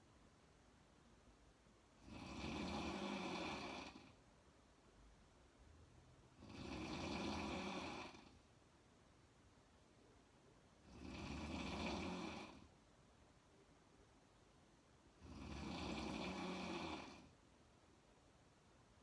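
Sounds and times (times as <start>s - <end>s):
woman snoring: 2.0s - 4.2s, 6.4s - 8.4s, 10.8s - 12.7s, 15.2s - 17.3s.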